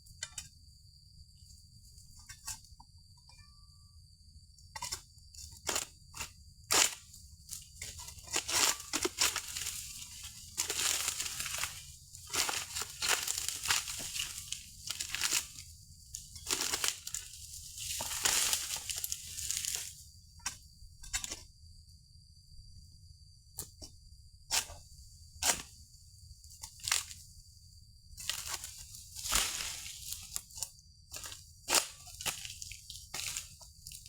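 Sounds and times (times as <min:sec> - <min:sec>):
leaves rustling and tearing: 0:08.3 - 0:15.6, 0:16.2 - 0:19.9, 0:28.2 - 0:34.0
sharp cracks of fronds: 0:16.3 - 0:19.9.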